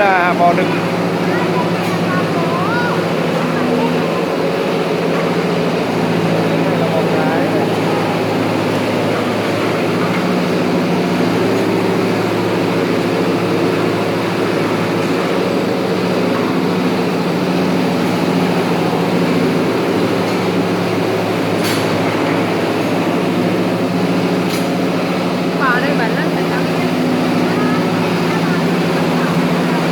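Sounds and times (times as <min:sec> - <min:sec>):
loud machinery drone: 0:00.0 - 0:29.9.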